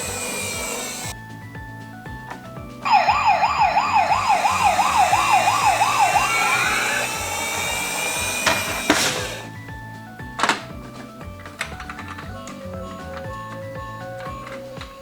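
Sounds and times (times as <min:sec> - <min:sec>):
electronic siren yelping: 0:02.9 - 0:09.0.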